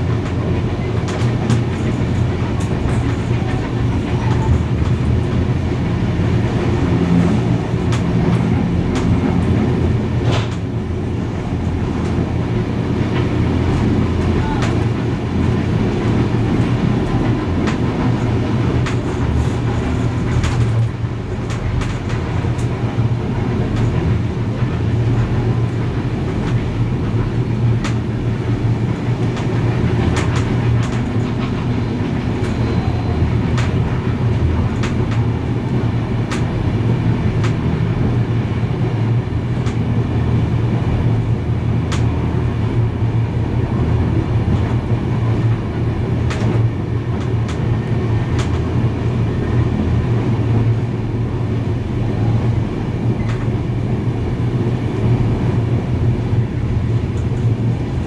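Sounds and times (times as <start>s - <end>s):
train wheels rumbling on rails: 0.0s - 58.0s
sharp clicks of wheels: 13.0s - 22.8s, 23.6s - 38.2s, 44.4s - 49.2s.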